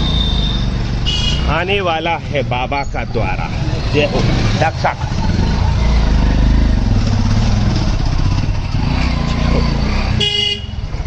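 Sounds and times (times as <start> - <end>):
horn beeping: 0.0 - 1.5, 10.2 - 10.8
vehicle engine running: 3.3 - 11.0.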